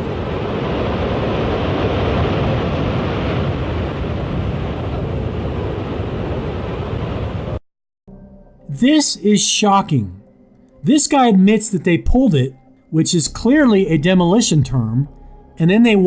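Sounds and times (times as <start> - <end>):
building collapsing roar: 0.0 - 7.6.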